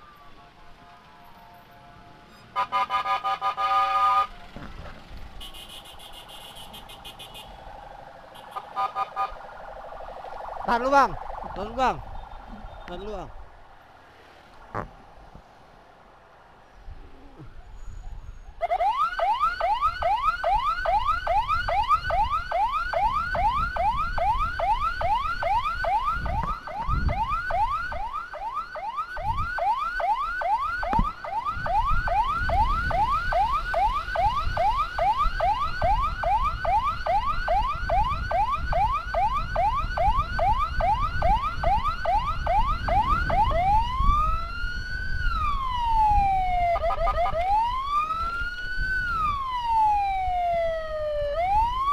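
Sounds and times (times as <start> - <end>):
electronic siren yelping and wailing: 6.1 - 13.7, 18.6 - 51.9.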